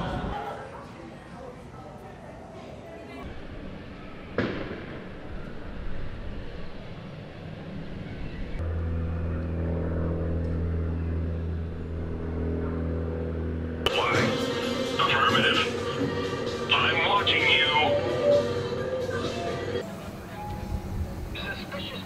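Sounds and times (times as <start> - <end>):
outdoor background noise: 0.0 - 22.0
low mechanical hum: 2.0 - 15.0.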